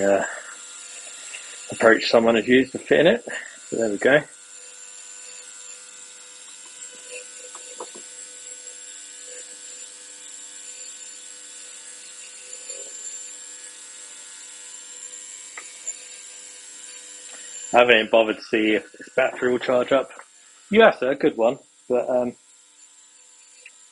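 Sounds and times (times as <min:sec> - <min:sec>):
ultrasonic cleaner humming: 0:00.0 - 0:11.1, 0:12.1 - 0:22.4.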